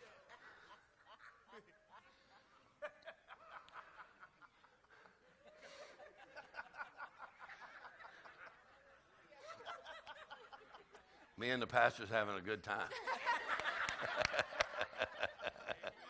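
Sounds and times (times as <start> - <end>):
faint laughter: 0.0 - 11.3.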